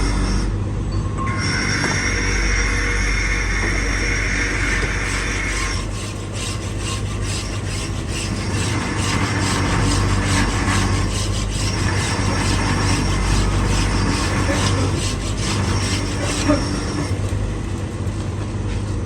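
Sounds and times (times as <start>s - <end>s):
steady machine hum: 0.0s - 19.0s
metal being filed: 3.8s - 18.2s.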